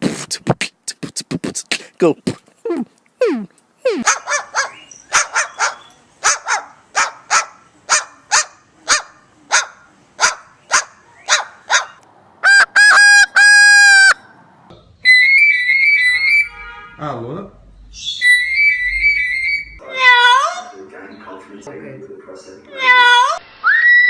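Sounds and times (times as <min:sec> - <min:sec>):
long steady parrot calls: 0:03.2 - 0:14.4, 0:15.0 - 0:16.7, 0:17.9 - 0:20.7
parrot honking calls: 0:03.8 - 0:14.2, 0:15.1 - 0:16.6, 0:18.2 - 0:20.8
whistled tune: 0:15.0 - 0:16.6, 0:18.0 - 0:19.8, 0:23.6 - 0:24.0.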